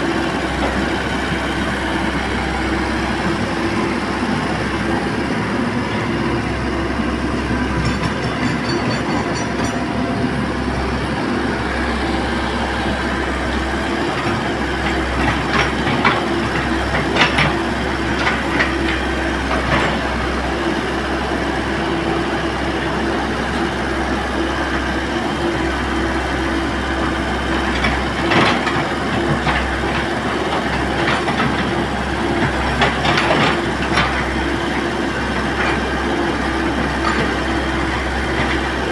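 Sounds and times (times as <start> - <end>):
diesel excavator engine running: 0.0 - 38.9
metallic clanks and knocks: 7.6 - 9.9.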